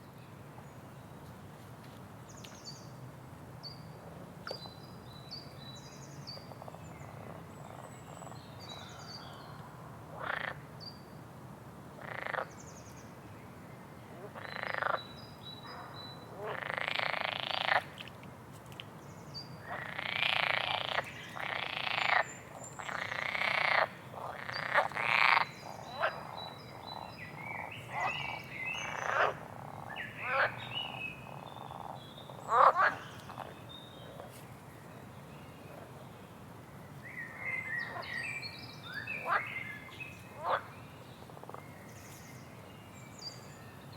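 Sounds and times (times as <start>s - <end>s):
frogs croaking: 10.1s - 10.7s, 12.0s - 12.6s, 14.2s - 18.1s, 19.6s - 34.3s, 38.9s - 41.8s.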